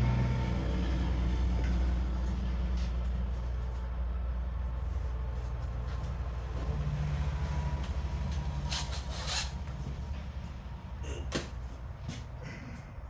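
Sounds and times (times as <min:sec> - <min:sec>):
low rumble: 0:00.0 - 0:08.7.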